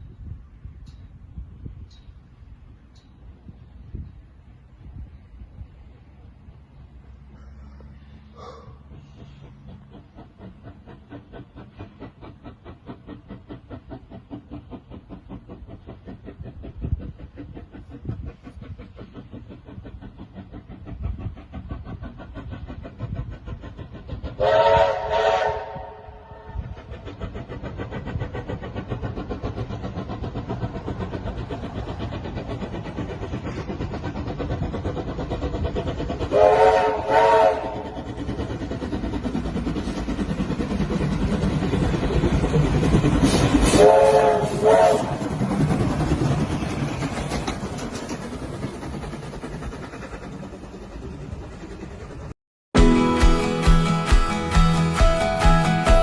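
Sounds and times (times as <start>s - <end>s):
steam locomotive exhaust beats: 0.0s - 56.0s
steam whistle blasts: 24.4s - 26.6s, 36.3s - 37.9s, 43.6s - 45.2s.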